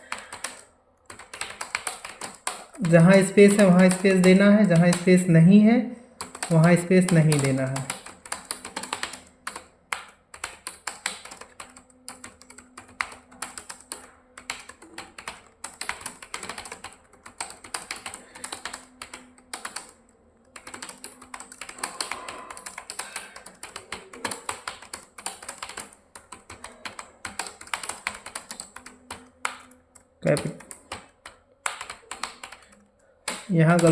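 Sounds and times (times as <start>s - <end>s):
fast typing on keyboard: 0.0s - 5.6s, 6.2s - 33.9s.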